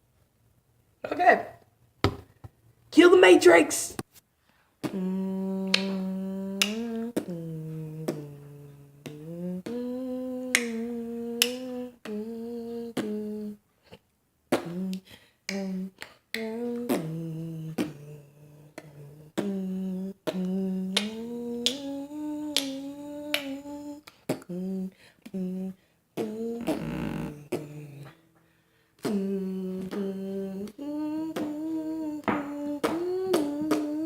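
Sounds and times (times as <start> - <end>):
finger snaps: 4.8 - 8.4, 9.0 - 12.2, 14.5 - 17.2, 20.2 - 25.5, 29.0 - 31.6, 32.5 - 34.0
person humming: 4.8 - 13.6, 14.6 - 28.3, 29.0 - 34.0.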